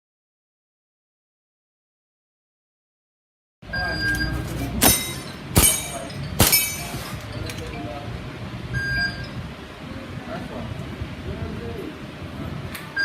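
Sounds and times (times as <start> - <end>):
airsoft pistol shots: 4.8 - 7.2.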